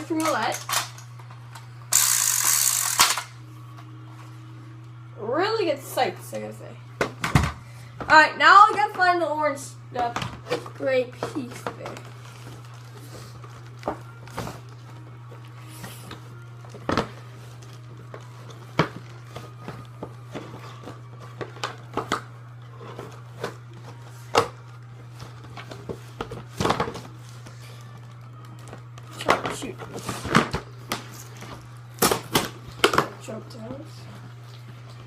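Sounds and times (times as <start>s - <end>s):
steady low hum: 0.0s - 35.0s
packaging rustling: 11.9s - 15.0s.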